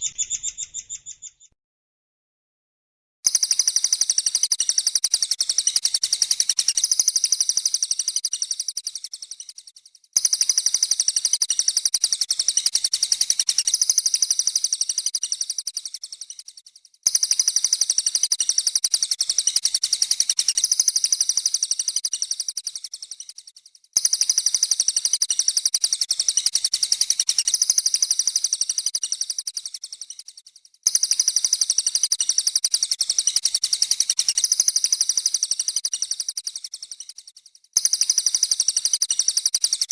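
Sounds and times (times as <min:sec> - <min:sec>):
songbirds chirping: 0:00.0 - 0:01.6.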